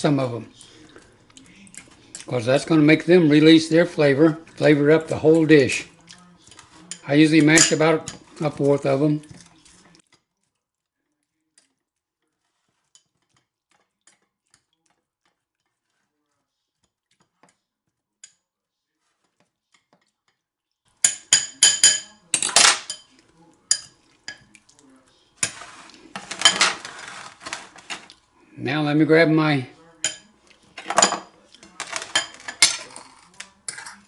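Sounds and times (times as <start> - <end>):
cutlery clinking against dish: 6.1 - 9.5, 12.8 - 15.8, 21.0 - 24.6, 25.4 - 28.1, 30.0 - 34.0
cutlery scraping dish: 6.4 - 9.4, 12.5 - 14.7, 25.4 - 28.1, 30.0 - 34.0.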